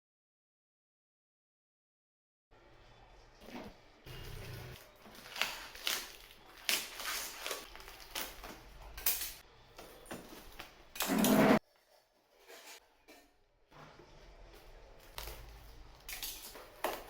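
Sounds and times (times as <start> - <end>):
packaging rustling and scraping: 4.8 - 8.7.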